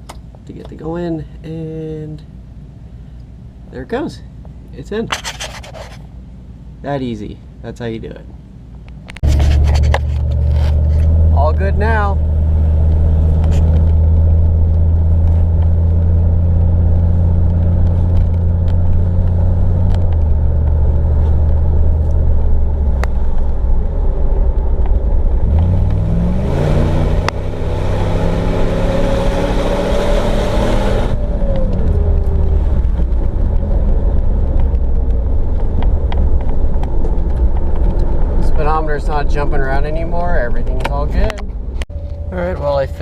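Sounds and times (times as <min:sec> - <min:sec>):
road noise: 0:00.0 - 0:43.0
car engine accelerating: 0:09.2 - 0:43.0.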